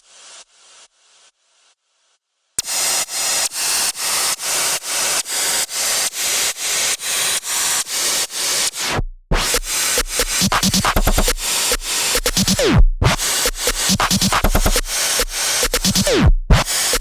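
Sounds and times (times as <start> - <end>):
electronic beat: 9.3 - 17.0
pulsing static white noise: 9.4 - 17.0
deep bass tone: 12.2 - 13.2, 15.8 - 16.6.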